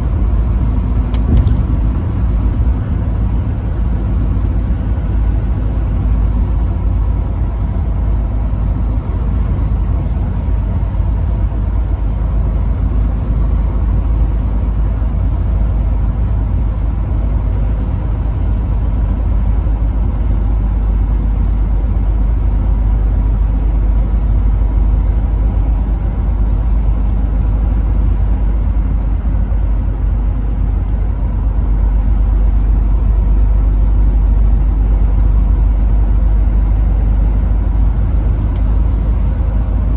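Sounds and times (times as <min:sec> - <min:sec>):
truck engine and road rumble: 0:00.0 - 0:39.9.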